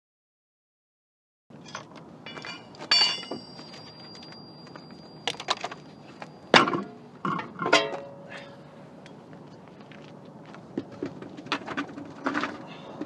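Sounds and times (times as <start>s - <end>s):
metal hand tools clinking: 1.6s - 8.2s
thin metallic ring: 1.7s - 8.3s.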